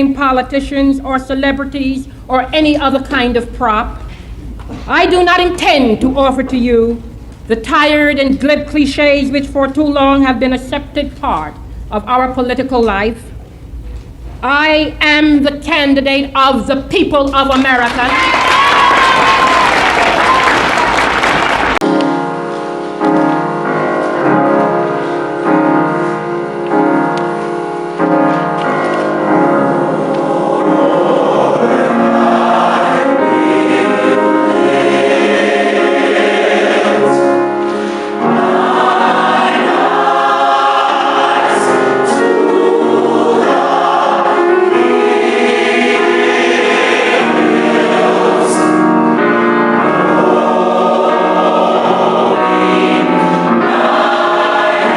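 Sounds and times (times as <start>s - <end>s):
choir singing gospel: 17.8s - 54.9s.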